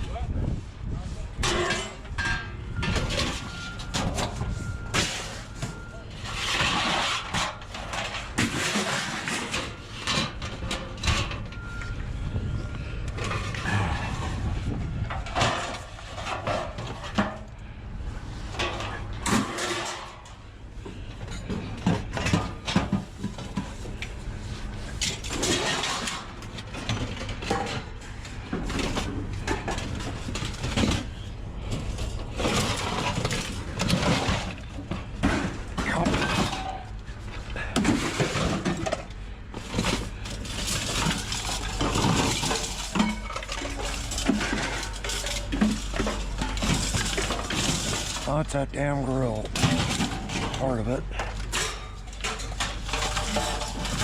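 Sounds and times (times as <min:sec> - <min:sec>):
scrap metal clanking: 0:01.2 - 0:54.0
low rumble: 0:11.5 - 0:16.3.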